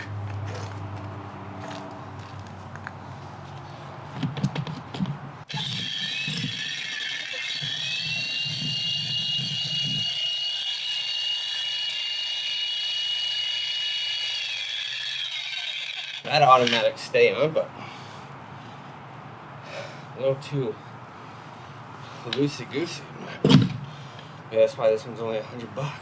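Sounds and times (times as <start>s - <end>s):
electric jackhammer whining: 5.5s - 16.8s.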